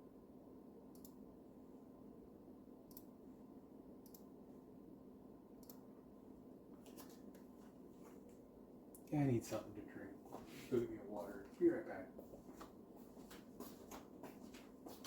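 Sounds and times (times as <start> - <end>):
faint room hum: 0.0 - 15.0.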